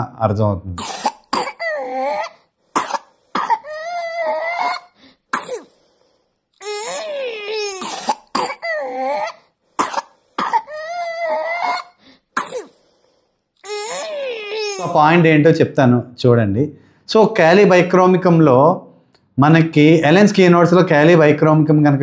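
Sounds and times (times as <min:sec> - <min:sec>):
baby coughing: 0:00.8 - 0:05.8, 0:06.6 - 0:12.8
baby high wavering cry: 0:01.6 - 0:02.4, 0:03.6 - 0:05.0, 0:06.6 - 0:08.0, 0:08.6 - 0:09.5, 0:10.6 - 0:12.0, 0:13.6 - 0:15.0.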